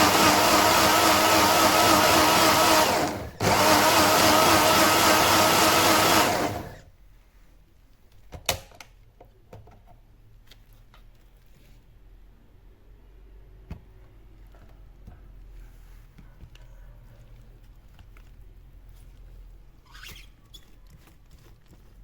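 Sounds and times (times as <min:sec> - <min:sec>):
electric blender running: 0:00.0 - 0:06.8.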